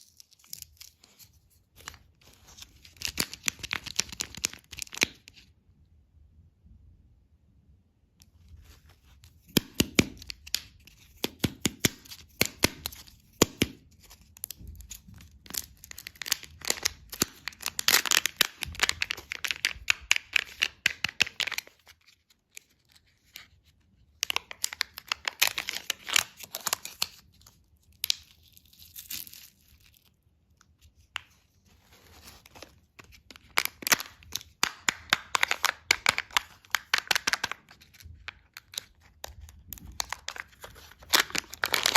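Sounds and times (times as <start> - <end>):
plastic packaging crinkling and tearing: 0.0 - 5.4, 14.1 - 23.5, 24.2 - 30.2, 31.0 - 41.9.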